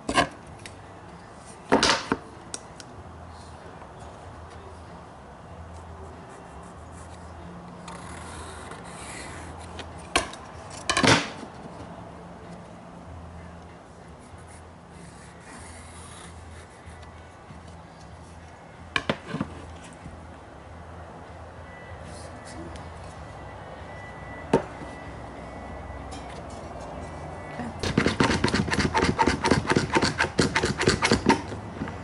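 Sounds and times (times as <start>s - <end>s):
wood scraping against wood: 27.8s - 31.6s.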